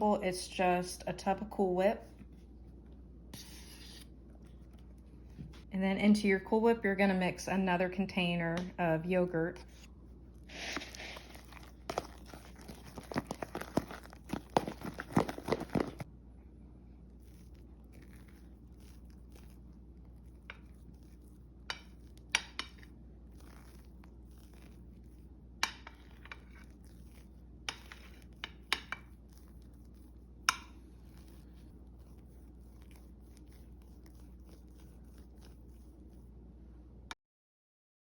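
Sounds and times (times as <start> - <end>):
low steady hum: 0.0 - 37.2
utensil tapping a dish: 27.7 - 29.1.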